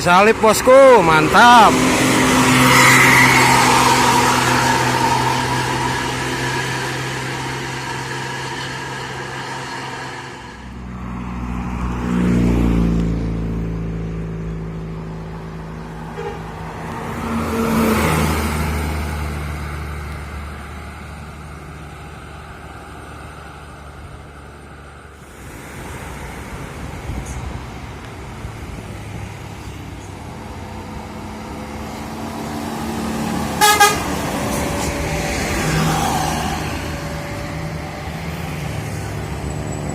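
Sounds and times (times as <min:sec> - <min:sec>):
buses driving past: 0:00.0 - 0:39.9
bus horn: 0:16.1 - 0:16.6, 0:33.4 - 0:38.0.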